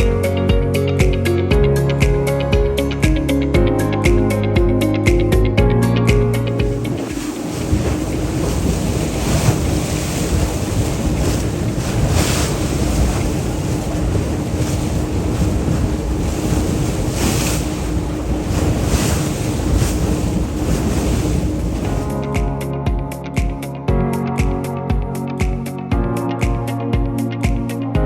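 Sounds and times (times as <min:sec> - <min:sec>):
water and waves rushing: 0:05.9 - 0:22.5
wind buffeting microphone: 0:06.2 - 0:22.5
spray washing: 0:06.5 - 0:22.1.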